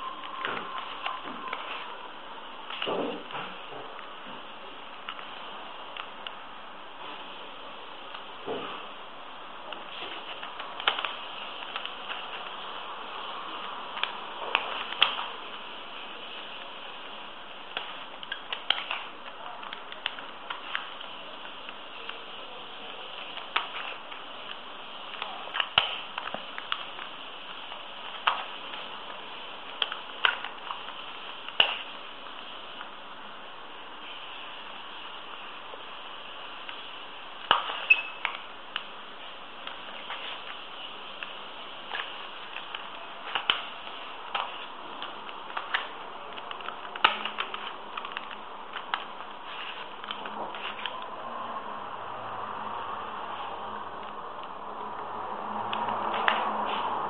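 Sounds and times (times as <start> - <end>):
steady hiss: 0.0 - 57.0
puzzle cube layers clicking: 9.7 - 12.7, 13.6 - 15.4, 17.6 - 22.3, 22.9 - 33.0, 37.4 - 51.1.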